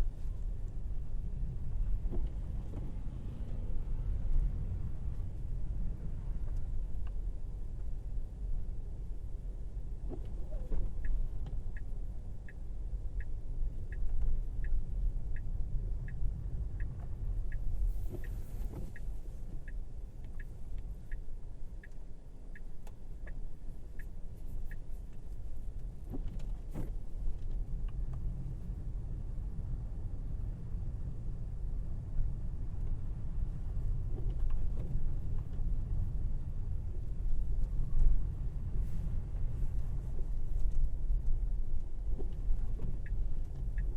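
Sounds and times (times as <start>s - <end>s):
road and tyre rumble: 0.0s - 43.9s
turn signal ticking: 6.5s - 28.9s, 32.4s - 43.9s.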